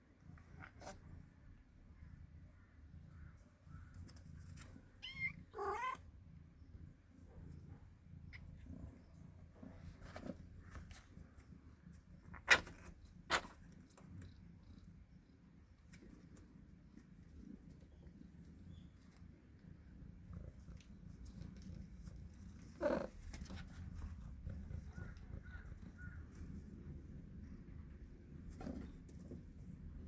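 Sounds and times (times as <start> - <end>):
kitten mewing: 5.0 - 6.0.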